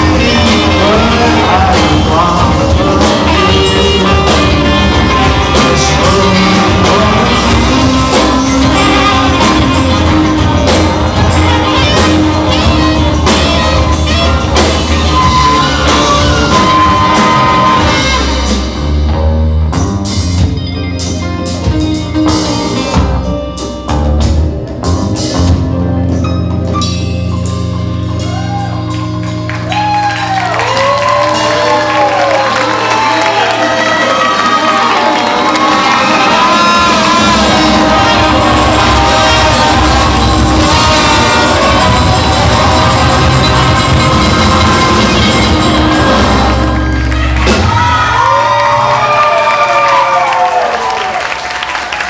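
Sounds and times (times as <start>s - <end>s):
audience whooping and cheering: 0.0s - 18.8s, 28.0s - 52.0s
live band playing: 0.0s - 52.0s
drum hits: 36.4s - 48.3s.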